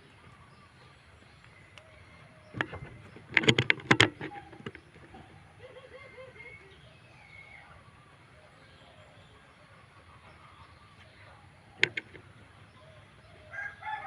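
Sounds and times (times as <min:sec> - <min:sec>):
faint bird chirping: 0:00.0 - 0:14.0
sharp knocks and rattles: 0:02.5 - 0:05.4, 0:11.8 - 0:12.4.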